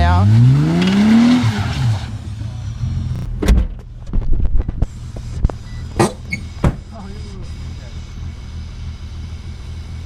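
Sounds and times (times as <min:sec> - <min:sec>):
car engine running low: 0:00.0 - 0:10.0
sharp knocks and clunks: 0:03.2 - 0:06.9.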